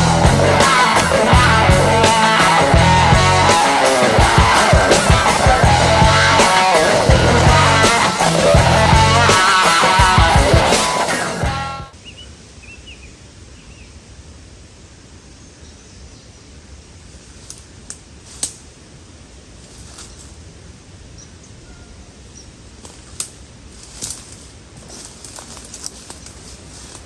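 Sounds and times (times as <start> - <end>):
music: 0.0 - 11.9
bird chirps: 12.0 - 13.9.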